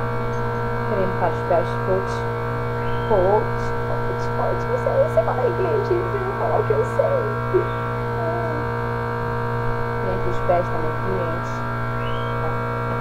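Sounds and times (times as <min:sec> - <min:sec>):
electric fan motor humming: 0:00.0 - 0:13.0
wavering pitched sounds: 0:00.3 - 0:08.9.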